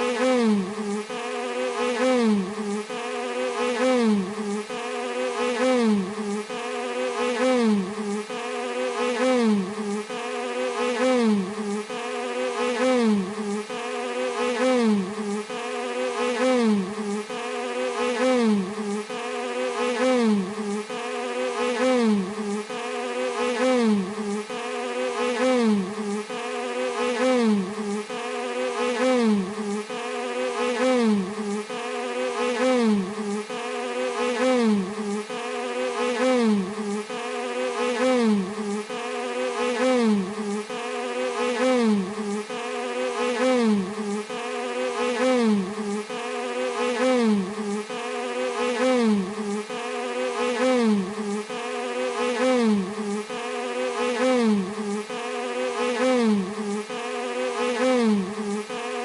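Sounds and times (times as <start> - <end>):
bee buzzing: 0.0 - 59.0.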